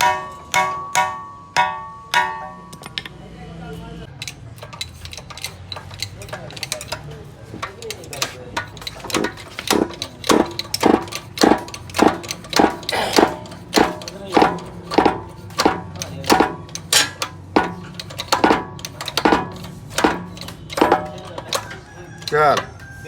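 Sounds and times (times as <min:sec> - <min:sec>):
hammer striking metal: 0:00.0 - 0:03.2, 0:07.6 - 0:22.8.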